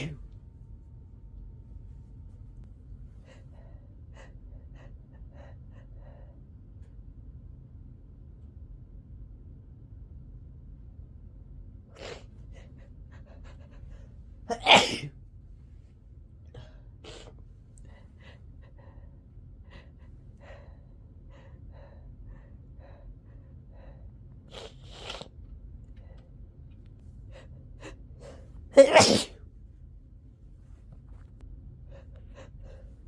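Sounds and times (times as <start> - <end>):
person sneezing: 0.0 - 0.2, 14.5 - 15.1, 28.8 - 29.4.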